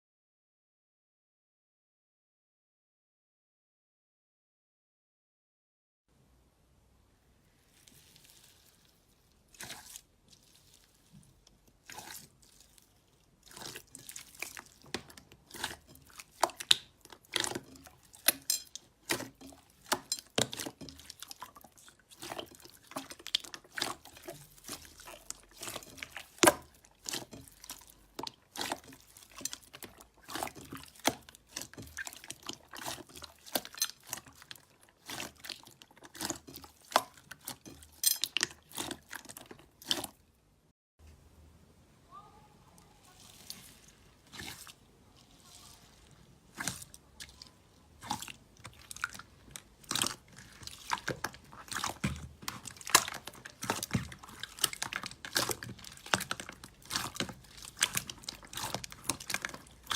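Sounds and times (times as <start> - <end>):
slime squishing with wet clicks: 7.7 - 40.4, 42.8 - 59.9.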